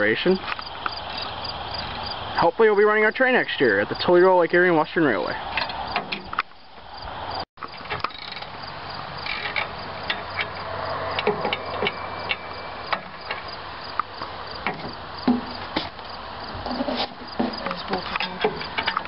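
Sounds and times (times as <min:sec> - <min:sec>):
insects chirping: 0:00.0 - 0:19.0
sharp clicks and knocks: 0:11.2 - 0:15.9.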